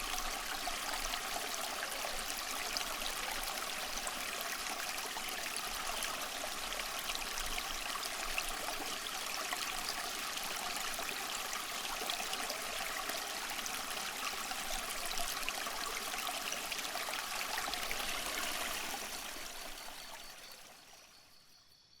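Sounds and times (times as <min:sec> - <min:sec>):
stream water flowing: 0:00.0 - 0:21.2.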